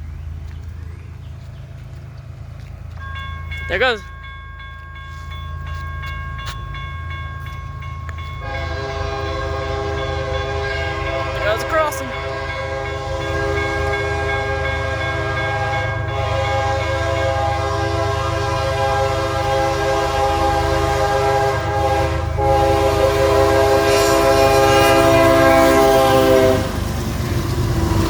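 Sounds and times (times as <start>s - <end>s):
train rumbling past: 0.0s - 28.0s
locomotive air horn chord: 8.4s - 26.7s.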